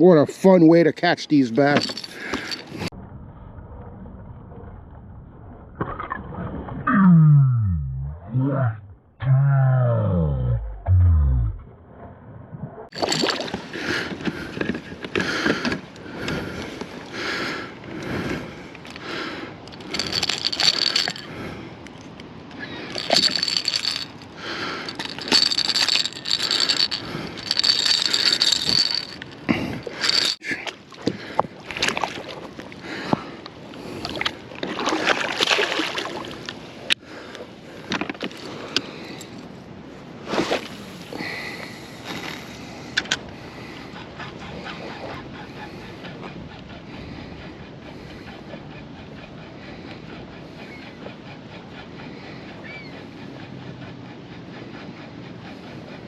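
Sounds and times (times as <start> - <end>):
water sloshing: 12.9 - 15.1, 34.0 - 36.6.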